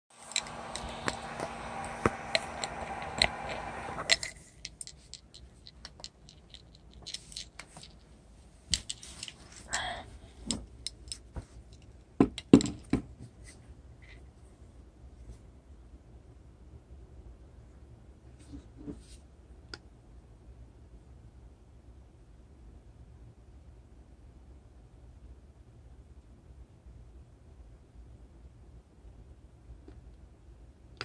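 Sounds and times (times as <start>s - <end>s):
small motor humming: 0.2s - 4.1s
clicks and handling noises: 0.2s - 8.1s.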